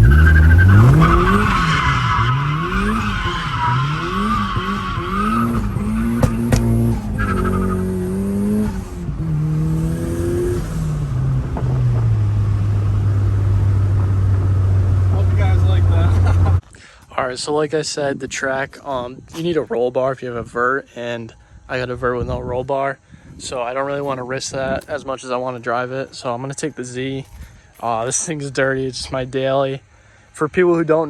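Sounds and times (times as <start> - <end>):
car engine revving: 0.0 - 16.6
tires squealing: 0.0 - 16.6.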